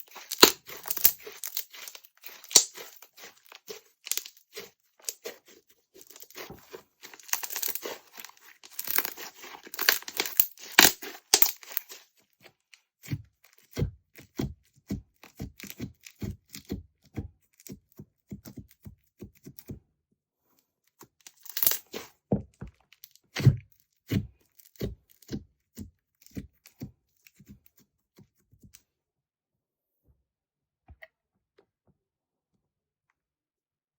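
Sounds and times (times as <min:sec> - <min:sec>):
slime crackling and crunching: 0:00.0 - 0:12.1, 0:21.3 - 0:22.1
slime popping and clicking: 0:00.2 - 0:02.9.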